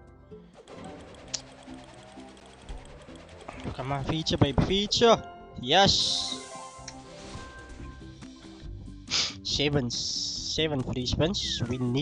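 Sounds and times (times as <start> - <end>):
electronic game music: 0.4 - 10.6
ticking of spinning reels: 0.6 - 5.2.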